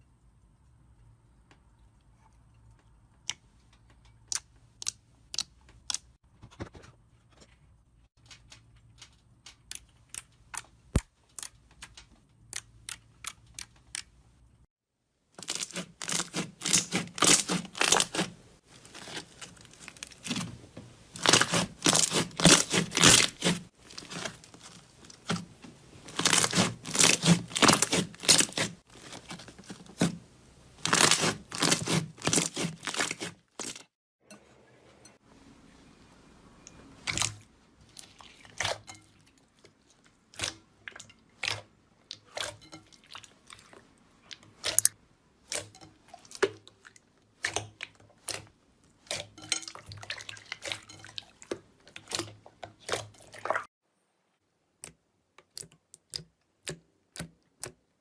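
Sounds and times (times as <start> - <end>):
slime crackling crunches: 15.4 - 20.5, 21.1 - 25.4, 26.0 - 33.9.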